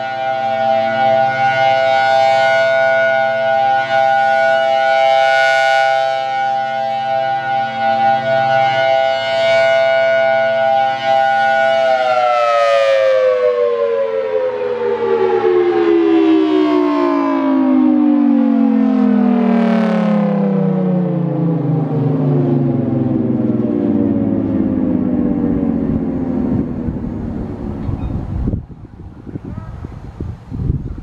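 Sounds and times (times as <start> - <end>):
warning siren winding down: 0.0 - 30.4.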